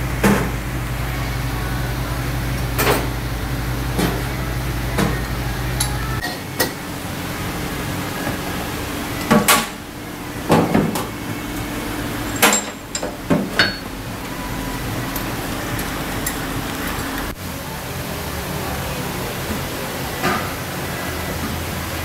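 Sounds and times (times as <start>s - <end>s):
steady background hum: 0.0s - 22.0s
tools knocking on metal: 12.3s - 13.9s.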